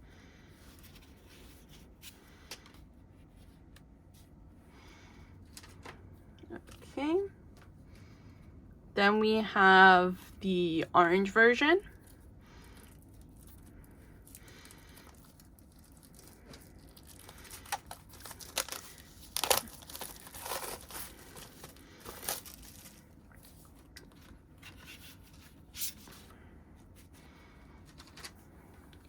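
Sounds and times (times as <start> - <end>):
plastic wrapping crinkling and tearing: 11.9 - 25.3.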